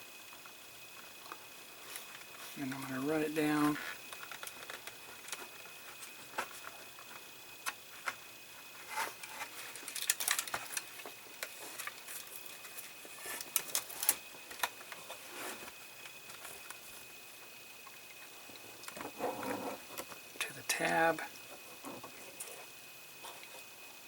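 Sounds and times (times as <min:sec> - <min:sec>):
plastic parts clicking: 0:09.7 - 0:12.3.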